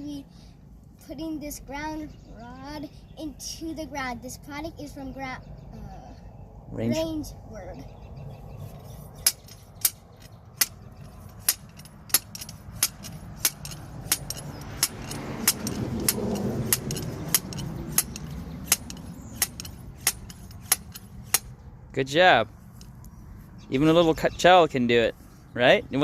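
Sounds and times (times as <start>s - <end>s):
hammer striking metal rod: 9.2s - 21.5s.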